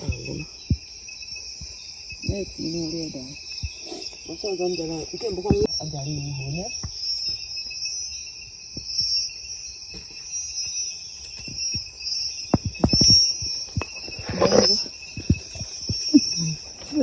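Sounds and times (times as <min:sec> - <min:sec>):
crickets trilling: 0:00.0 - 0:17.0
dull knocks: 0:09.9 - 0:17.0.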